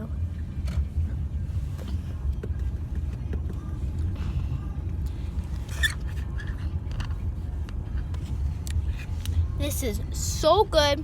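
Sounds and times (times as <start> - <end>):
vehicle engine rumbling: 0.0 - 11.0.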